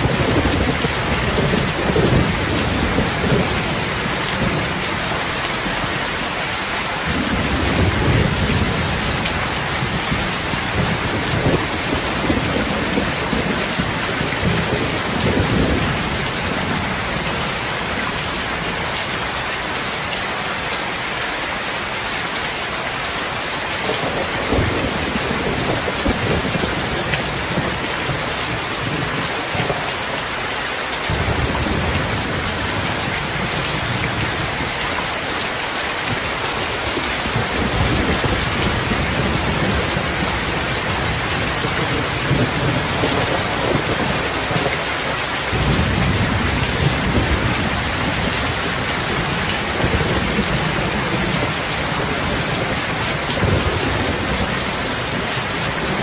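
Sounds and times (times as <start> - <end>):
rolling thunder: 0.0 - 6.0, 7.0 - 18.0, 23.9 - 29.8, 45.4 - 56.0
heavy rain falling: 0.0 - 56.0.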